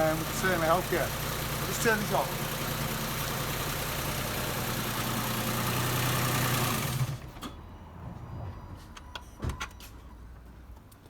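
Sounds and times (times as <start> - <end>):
car engine idling with misfire: 0.0 - 7.5.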